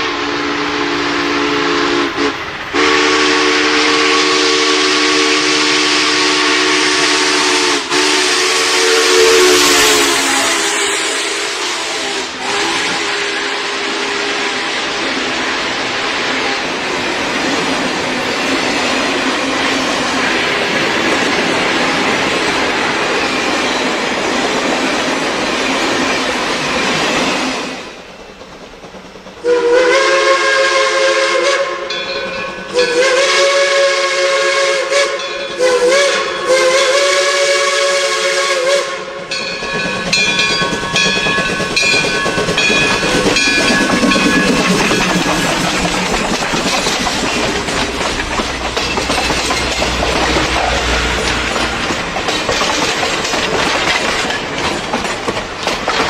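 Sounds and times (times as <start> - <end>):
locomotive chord whistle: 0.0 - 15.6, 29.4 - 39.5, 49.8 - 51.7
locomotive rushing hiss: 0.0 - 56.0.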